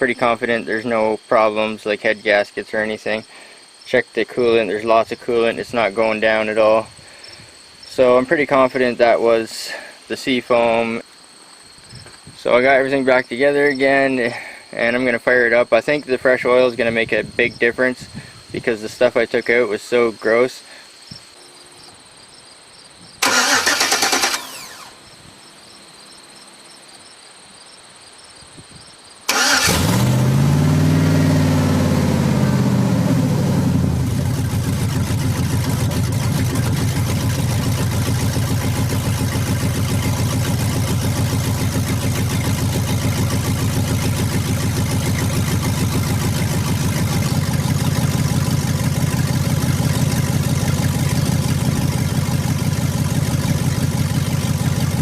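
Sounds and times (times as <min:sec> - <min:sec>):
car engine starting and idling: 0:23.2 - 0:25.1, 0:29.3 - 0:55.0.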